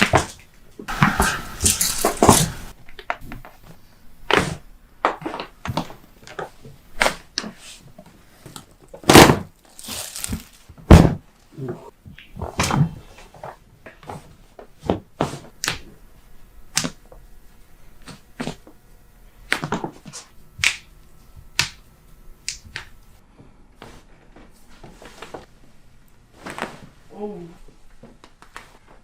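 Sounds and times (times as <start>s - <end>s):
body moving on treatment table: 0.0s - 18.8s, 23.8s - 25.6s, 26.2s - 27.1s.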